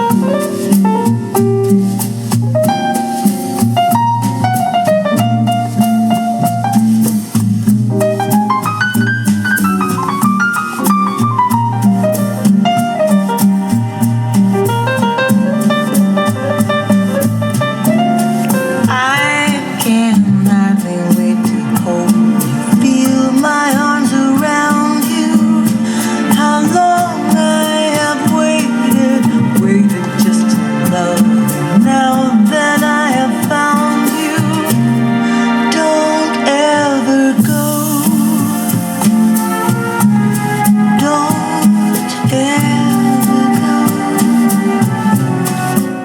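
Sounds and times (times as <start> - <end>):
steady bass line: 0.0 - 24.0, 37.4 - 41.6
sliding melodic lines: 0.0 - 46.0
slow jazz ballad: 0.0 - 46.0.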